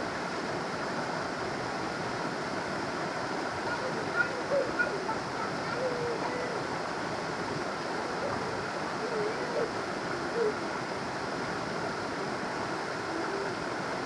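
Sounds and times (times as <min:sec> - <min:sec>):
creek water rushing over rocks: 0:00.0 - 0:14.0.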